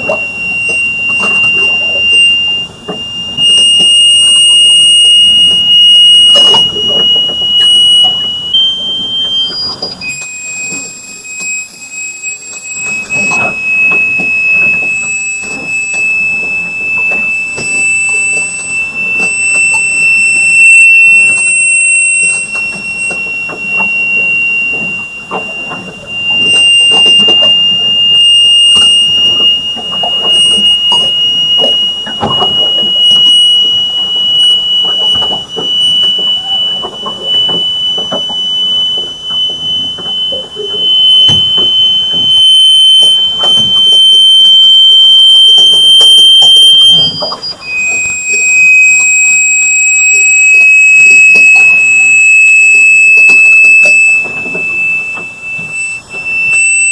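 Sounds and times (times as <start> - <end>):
crackling and knocking: 0.0 - 44.2
high-pitched whine: 0.0 - 56.9.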